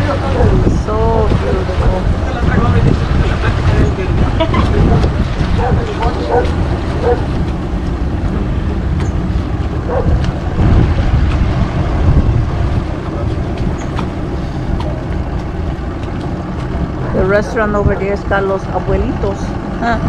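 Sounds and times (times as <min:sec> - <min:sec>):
boat motor running: 0:00.0 - 0:20.0
wind buffeting microphone: 0:00.0 - 0:20.0.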